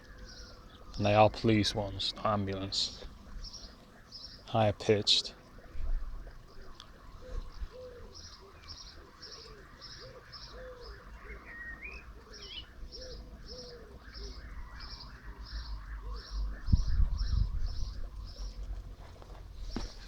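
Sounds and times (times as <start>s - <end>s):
pigeon cooing: 5.4s - 20.0s
small bird chirping: 5.7s - 20.0s.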